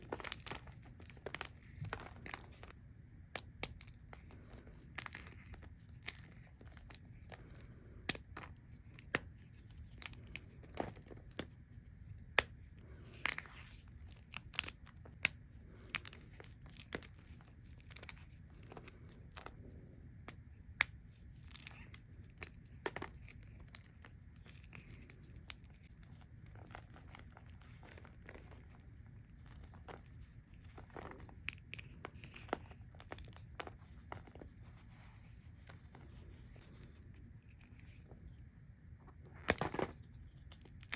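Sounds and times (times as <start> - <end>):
chalk crackling and crunching: 20.8 - 38.4.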